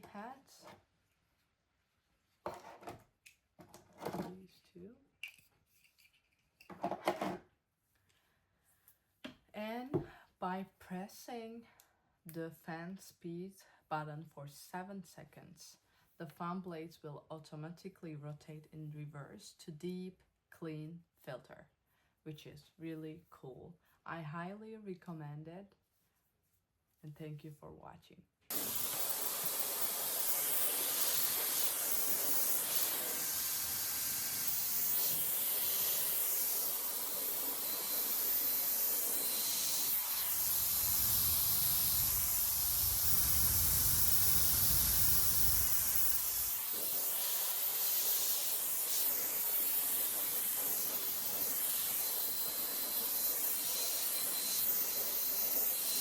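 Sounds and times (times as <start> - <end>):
faint high whine: 28.5 - 56.0
hair dryer blowing air: 28.5 - 56.0.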